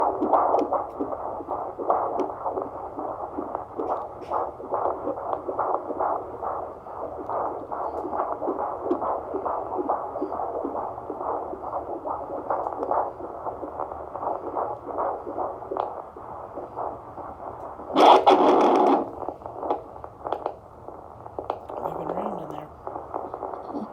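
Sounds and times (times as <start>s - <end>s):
fetal heartbeat on doppler speaker: 0.0s - 23.9s.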